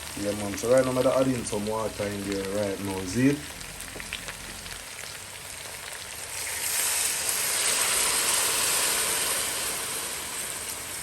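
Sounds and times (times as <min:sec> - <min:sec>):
water hissing in hot pot: 0:06.1 - 0:11.0.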